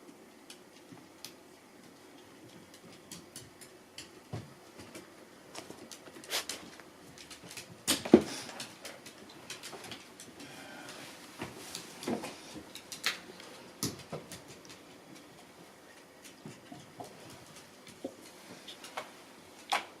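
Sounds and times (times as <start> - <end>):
cats play-fighting thumps and scuffles: 2.4 - 13.2, 16.2 - 19.8.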